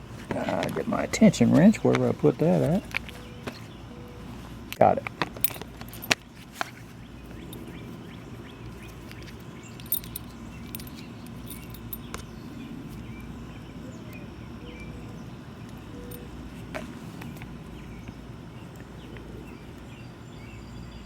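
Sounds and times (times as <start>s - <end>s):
metal clicks: 8.6s - 12.3s
electric lock pick buzzing: 8.9s - 12.2s.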